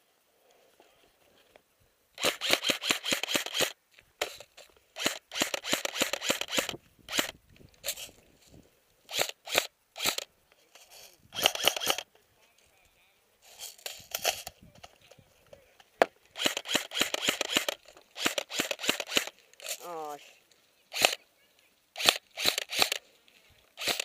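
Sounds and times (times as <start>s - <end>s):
airsoft rifle firing: 2.2s - 4.4s, 5.0s - 7.4s, 9.1s - 10.3s, 11.4s - 12.0s, 16.4s - 19.4s, 20.9s - 21.2s, 22.0s - 23.0s, 23.8s - 24.0s.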